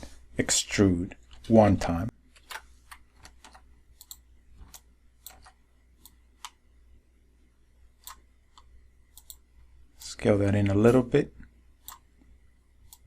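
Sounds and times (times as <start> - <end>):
faint low hum: 0.0 - 13.0
mouse and keyboard clicks: 2.4 - 6.6, 8.0 - 9.4.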